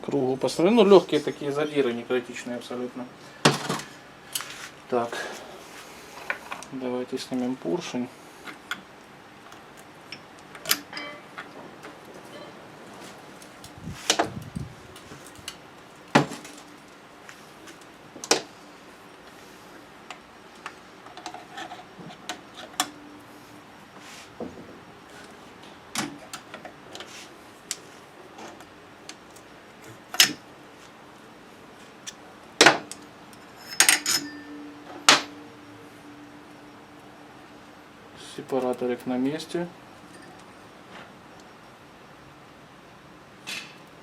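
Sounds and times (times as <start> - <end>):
metal tools clinking: 10.7 - 11.5, 33.4 - 35.4
metallic jingle: 33.5 - 35.7.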